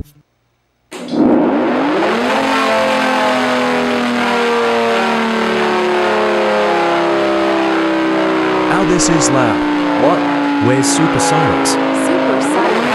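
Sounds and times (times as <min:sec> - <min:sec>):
rushing noise: 0:00.9 - 0:05.8
warning sirens wailing: 0:00.9 - 0:12.9.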